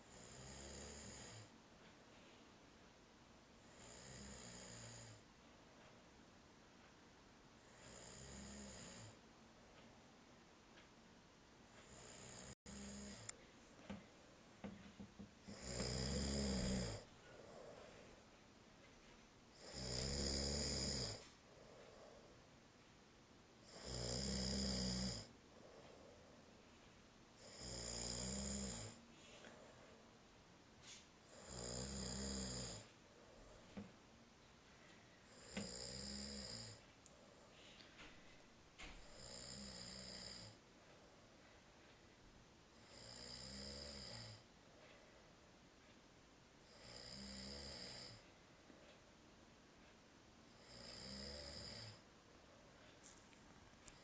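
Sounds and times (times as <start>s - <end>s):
snoring: 0.0s - 1.5s, 3.6s - 5.2s, 7.6s - 9.2s, 11.8s - 13.4s, 15.4s - 17.8s, 19.5s - 22.2s, 23.6s - 25.9s, 27.4s - 29.0s, 31.3s - 33.4s, 35.3s - 36.8s, 39.0s - 40.6s, 42.8s - 44.4s, 46.6s - 48.2s, 50.5s - 52.0s
quiet breathing: 0.0s - 54.0s.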